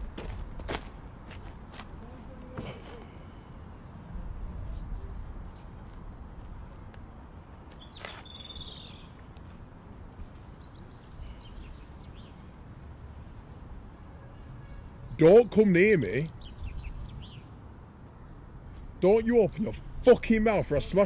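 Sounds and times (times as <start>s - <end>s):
small birds chirping: 1.0s - 12.8s, 14.3s - 18.8s.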